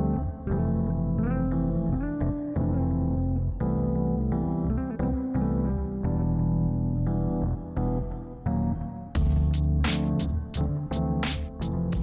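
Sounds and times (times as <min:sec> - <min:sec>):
bass notes: 0:00.0 - 0:12.0
steady beat: 0:09.2 - 0:12.0.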